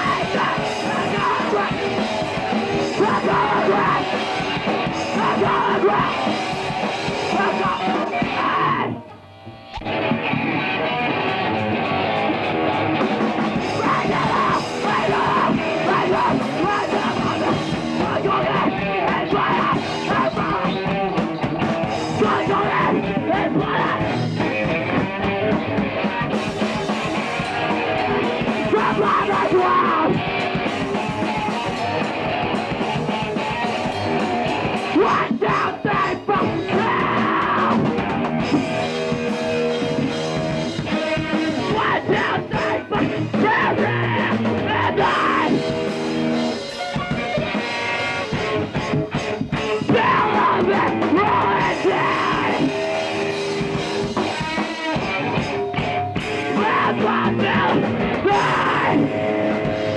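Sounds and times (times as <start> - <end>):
person yelling vocals: 0.0 - 1.9, 2.9 - 4.2, 5.1 - 6.3, 7.3 - 9.2, 13.6 - 20.9, 22.1 - 24.3, 28.6 - 30.2, 34.9 - 37.8, 41.5 - 45.6, 49.8 - 52.8, 56.5 - 59.6
loud punk rock music: 0.0 - 59.9.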